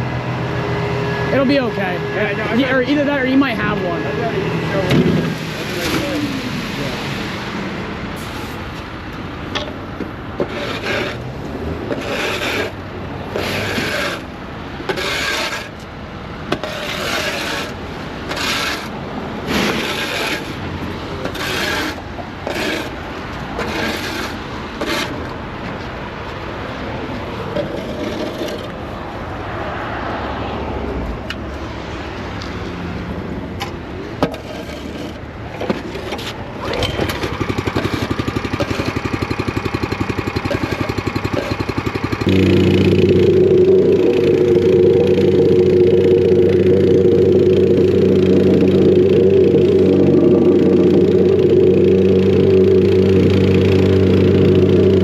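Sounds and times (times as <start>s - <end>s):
steady scraping noise: 0.0s - 7.5s, 10.4s - 15.8s, 16.6s - 25.3s, 27.4s - 28.9s, 34.2s - 39.0s, 40.4s - 55.0s
shovel scraping asphalt: 10.4s - 15.9s, 16.5s - 25.4s, 27.5s - 28.8s, 34.2s - 42.4s.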